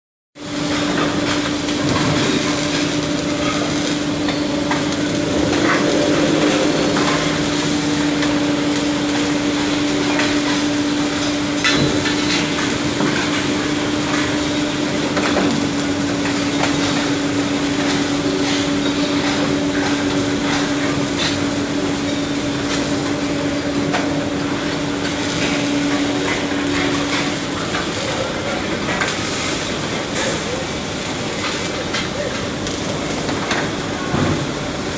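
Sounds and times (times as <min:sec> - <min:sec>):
steady hum: 0:00.4 - 0:29.1
welding arc crackling hiss: 0:00.4 - 0:34.9.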